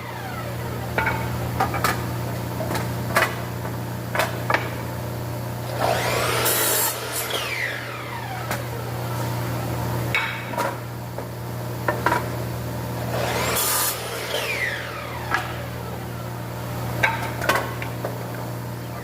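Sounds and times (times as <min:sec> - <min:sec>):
workshop machinery humming: 0:00.0 - 0:19.0
wood and tools clattering: 0:00.1 - 0:03.4, 0:17.0 - 0:18.2
falling whine: 0:06.9 - 0:09.8, 0:13.0 - 0:17.9.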